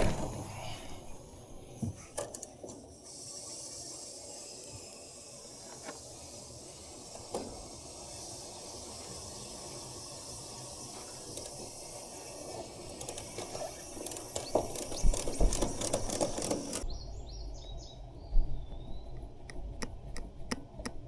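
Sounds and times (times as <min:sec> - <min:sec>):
refrigerant hissing: 0:00.0 - 0:17.0
tools clicking on valves: 0:10.6 - 0:16.8.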